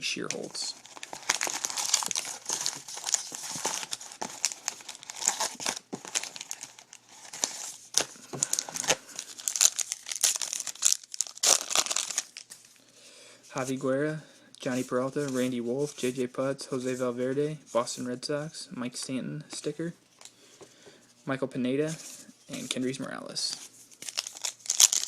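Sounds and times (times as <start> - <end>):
foil wrapper crinkling: 0.3 - 12.8, 23.9 - 25.0.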